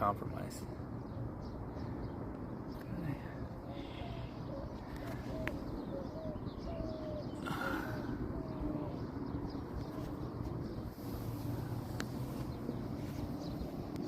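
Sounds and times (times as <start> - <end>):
steady low rumble: 0.0 - 14.0
bird cooing softly: 3.4 - 11.9.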